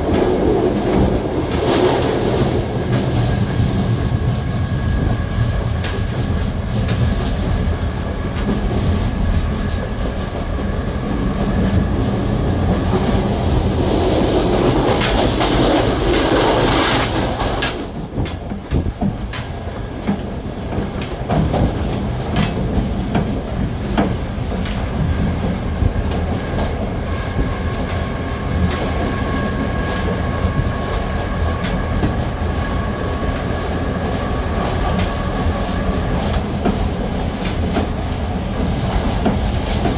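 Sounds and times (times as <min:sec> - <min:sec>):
train low rumble: 0:00.0 - 0:39.9
wheels clicking over rail joints: 0:14.1 - 0:27.0.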